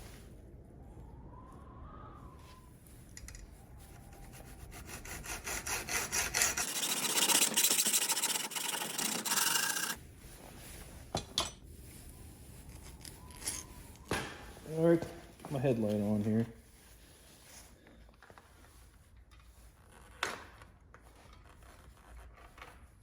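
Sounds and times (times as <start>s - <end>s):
steel tubing being cut by hand: 4.2s - 10.0s.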